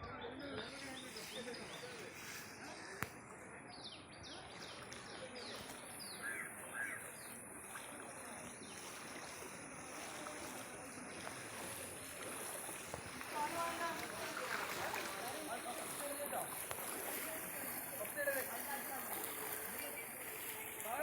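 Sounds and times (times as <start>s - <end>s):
floodwater rushing: 4.3s - 21.0s.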